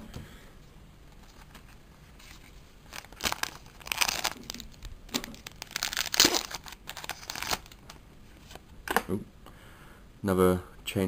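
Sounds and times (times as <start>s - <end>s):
foil wrapper crinkling and tearing: 2.3s - 7.9s.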